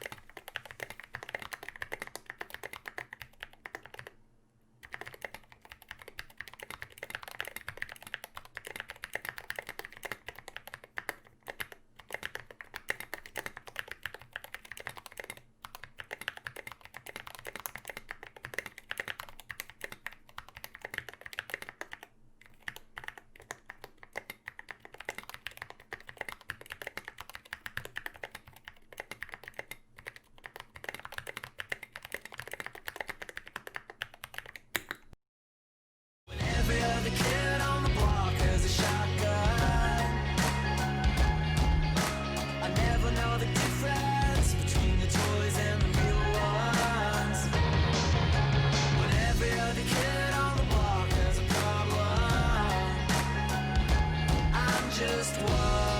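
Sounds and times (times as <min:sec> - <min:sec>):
mechanical keyboard typing: 0:00.0 - 0:04.2, 0:04.8 - 0:35.2.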